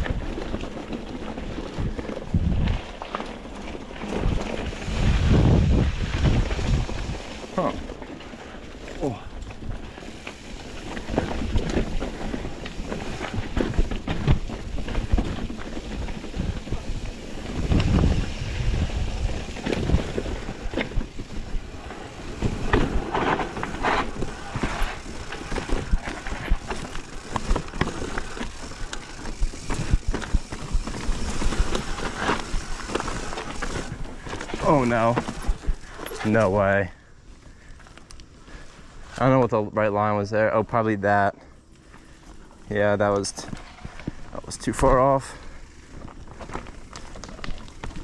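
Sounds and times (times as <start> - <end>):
tyres crunching over rock: 0.0 - 36.8, 41.6 - 48.0
bike knocking and rattling: 0.0 - 39.4, 41.0 - 48.0
wind rushing over microphone: 4.1 - 7.3, 16.1 - 26.8.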